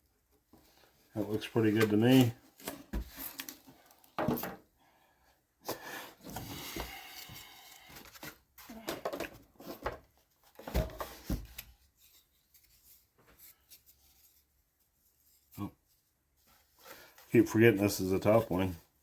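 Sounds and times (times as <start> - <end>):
wooden parts scraping and rustling: 0.6 - 4.6.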